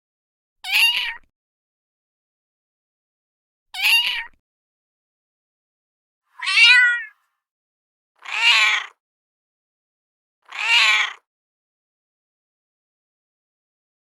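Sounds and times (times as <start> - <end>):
cat meowing: 0.6 - 1.3, 3.8 - 4.4, 6.3 - 7.2, 8.2 - 9.0, 10.4 - 11.3.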